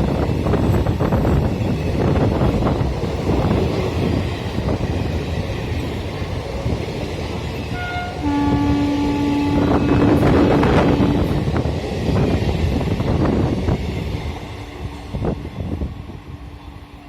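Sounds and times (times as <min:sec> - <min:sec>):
passing train rumble: 0:00.0 - 0:17.0
locomotive horn: 0:07.7 - 0:11.4.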